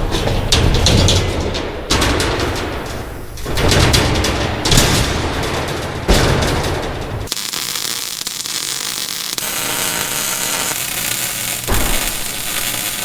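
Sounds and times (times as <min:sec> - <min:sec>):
welding arc crackling and hissing: 0:07.3 - 0:13.0.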